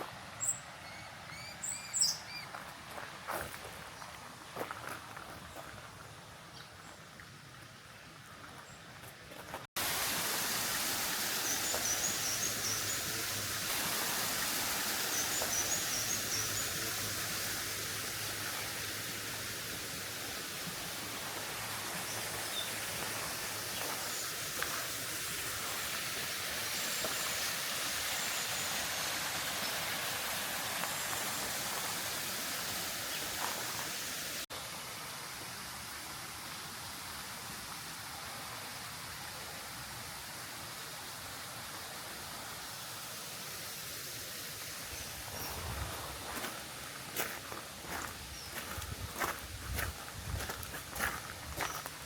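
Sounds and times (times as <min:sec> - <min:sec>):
rushing water: 0:00.0 - 0:06.4, 0:07.1 - 0:52.0
bird chirping: 0:00.4 - 0:02.6.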